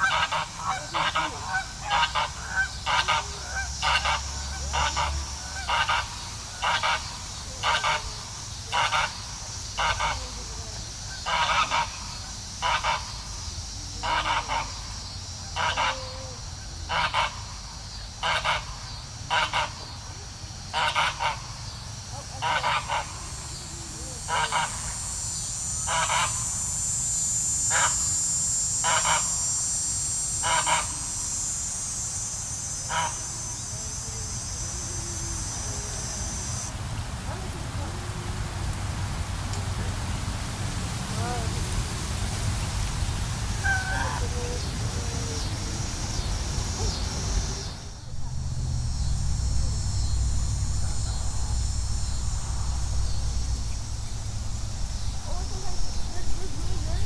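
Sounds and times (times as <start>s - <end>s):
geese honking: 0.0s - 27.0s, 27.6s - 28.2s, 28.8s - 29.6s, 30.4s - 31.2s, 32.7s - 36.7s, 43.5s - 57.0s
high insect buzz: 0.0s - 57.0s.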